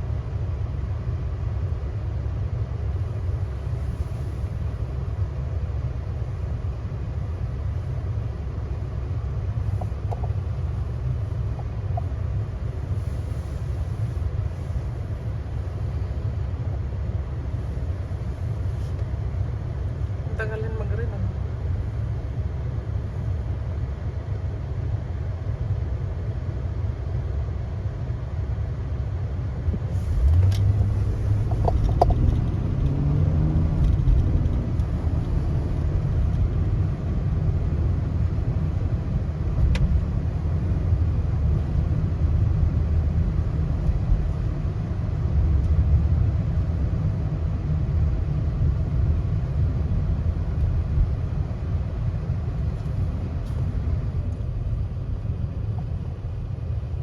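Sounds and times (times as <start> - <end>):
car engine and road rumble: 0.0 - 57.0.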